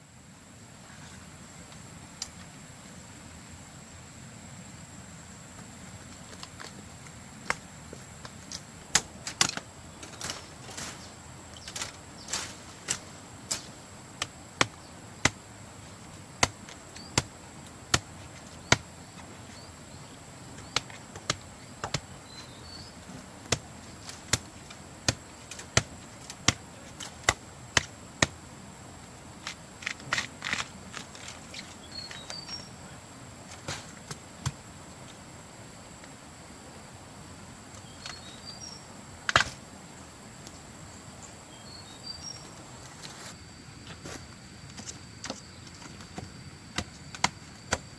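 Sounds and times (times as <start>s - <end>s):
high insect drone: 0.0s - 47.9s
sharp knocks and snaps: 6.3s - 7.6s, 8.2s - 10.9s, 20.6s - 22.1s, 23.1s - 28.4s.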